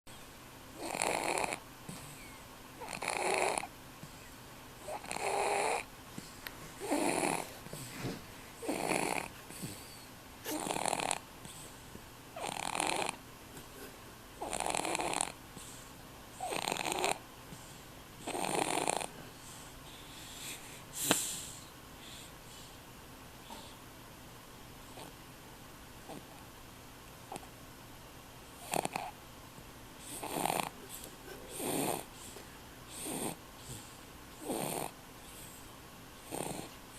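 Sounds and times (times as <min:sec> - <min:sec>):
baby snoring: 0:00.8 - 0:08.0, 0:08.6 - 0:11.7, 0:12.4 - 0:13.2, 0:14.4 - 0:15.4, 0:16.4 - 0:17.2, 0:18.2 - 0:19.2, 0:24.9 - 0:25.2, 0:26.1 - 0:26.4, 0:27.3 - 0:27.5, 0:28.6 - 0:29.2, 0:30.0 - 0:35.6, 0:36.2 - 0:36.8.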